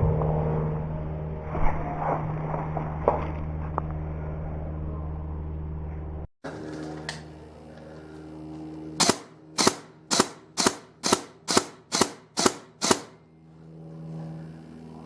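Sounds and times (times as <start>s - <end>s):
airsoft rifle shots: 9.0s - 13.2s.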